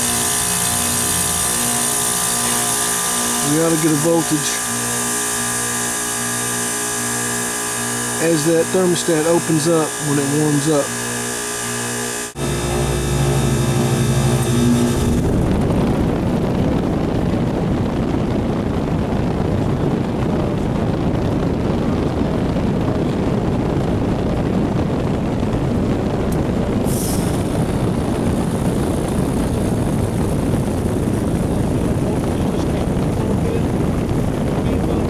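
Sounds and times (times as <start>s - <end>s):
tonal hum: 0.0s - 18.1s
heat pump unit running: 0.0s - 35.0s.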